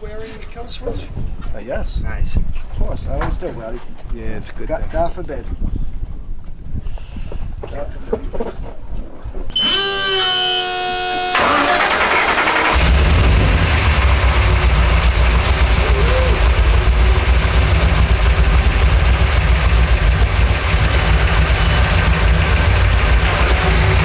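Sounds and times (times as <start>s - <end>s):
boat engines idling: 10.7s - 24.0s.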